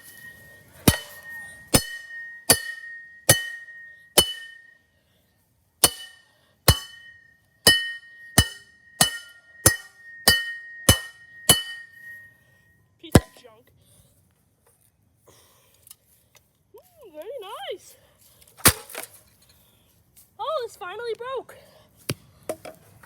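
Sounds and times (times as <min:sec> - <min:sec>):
hammer striking metal with ringing: 0:00.0 - 0:04.8, 0:05.8 - 0:12.3, 0:13.2 - 0:13.4.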